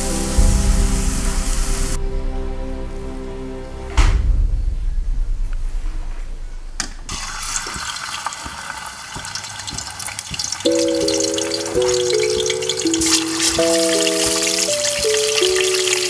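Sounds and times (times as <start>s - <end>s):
background music: 0.0s - 8.2s, 10.7s - 16.0s
water running from a tap: 7.1s - 16.0s.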